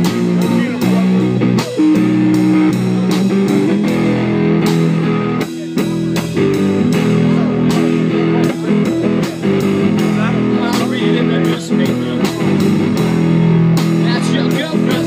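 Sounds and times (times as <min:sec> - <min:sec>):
bass guitar: 0:00.0 - 0:15.0
electric guitar blues: 0:00.0 - 0:15.0.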